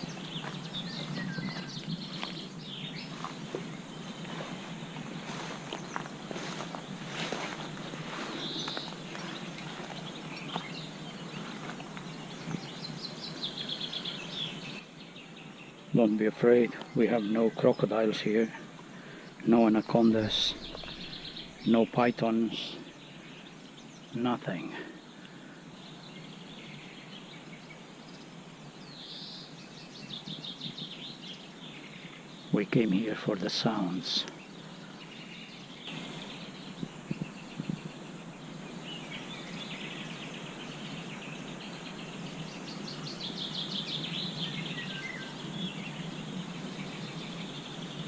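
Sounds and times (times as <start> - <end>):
songbird calls: 0.0 - 48.0
steady background hiss: 0.0 - 48.0.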